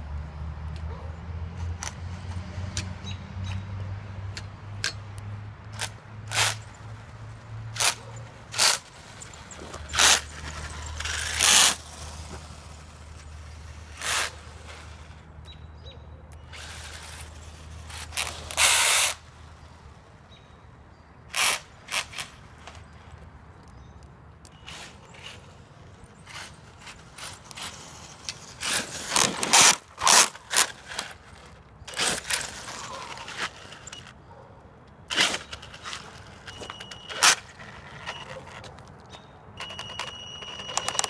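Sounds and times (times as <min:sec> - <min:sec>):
toy truck grinding: 0:05.7 - 0:15.3, 0:16.3 - 0:20.0, 0:21.3 - 0:23.0, 0:24.5 - 0:34.2, 0:35.0 - 0:38.9, 0:39.6 - 0:41.0.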